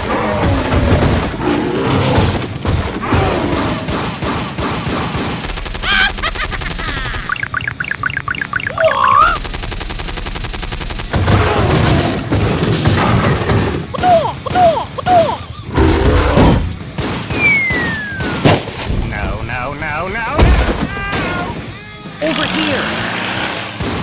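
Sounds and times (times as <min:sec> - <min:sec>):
cartoon bangs and impacts: 0:00.0 - 0:04.5, 0:11.1 - 0:16.8, 0:17.4 - 0:19.5, 0:20.3 - 0:21.6
rising and falling chirps: 0:07.0 - 0:09.4, 0:17.3 - 0:18.4
falling whistle: 0:17.3 - 0:18.4.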